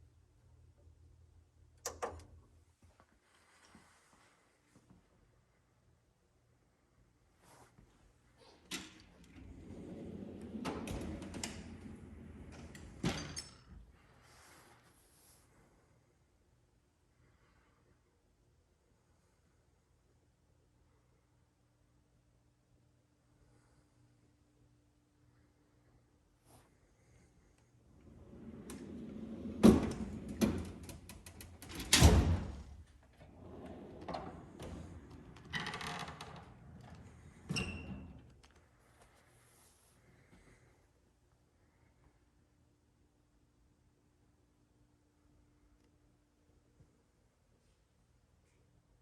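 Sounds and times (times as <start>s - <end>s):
click: 1.8s - 2.3s
drawer sliding on runners: 28.0s - 32.0s.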